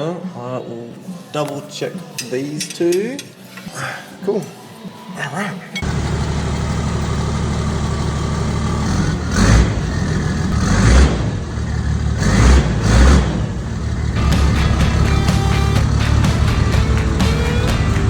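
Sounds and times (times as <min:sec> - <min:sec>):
diesel engine idling and revving: 0:05.8 - 0:18.0.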